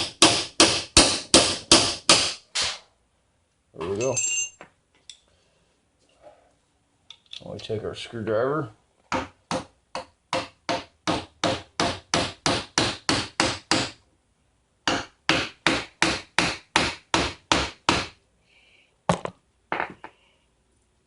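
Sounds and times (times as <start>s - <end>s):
hammer striking a screwdriver: 0.0s - 2.4s.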